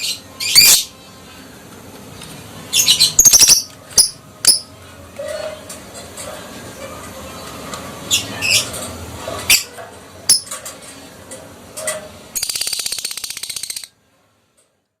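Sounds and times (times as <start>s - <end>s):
lovebird chattering trill: 12.4s - 13.9s.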